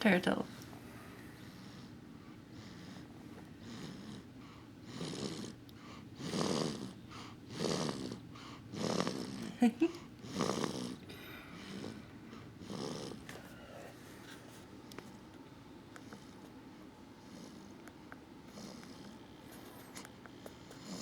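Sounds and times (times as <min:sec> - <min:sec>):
baby snoring: 0:02.6 - 0:05.6, 0:06.2 - 0:09.6, 0:10.2 - 0:13.2, 0:20.8 - 0:21.0.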